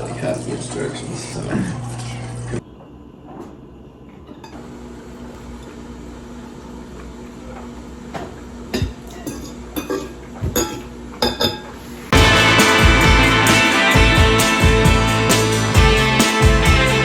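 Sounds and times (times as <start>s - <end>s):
dishes and cutlery clinking: 8.8s - 11.7s.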